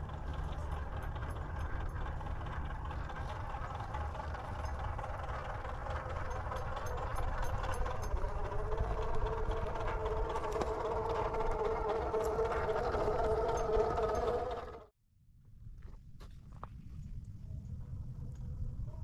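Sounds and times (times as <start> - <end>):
electric motor whining: 0.0 - 14.9.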